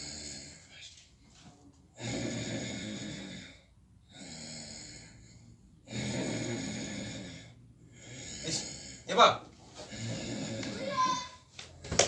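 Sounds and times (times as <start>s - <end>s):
man snoring: 0.0s - 0.7s, 2.0s - 9.1s, 9.9s - 11.2s
quiet breath: 0.0s - 10.8s.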